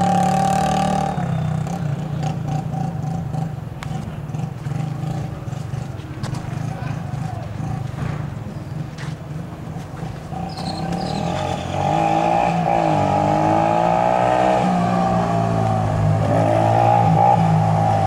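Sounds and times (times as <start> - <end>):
motorcycle engines running: 0.0 - 18.0.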